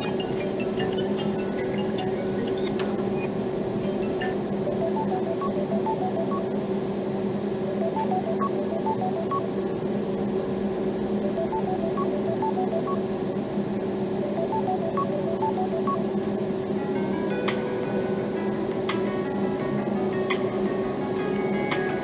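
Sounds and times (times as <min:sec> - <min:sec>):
steady low hum: 0:00.0 - 0:22.0
phone ringtone beeping notes: 0:03.9 - 0:06.5, 0:07.8 - 0:09.5, 0:11.3 - 0:13.0, 0:14.3 - 0:16.0.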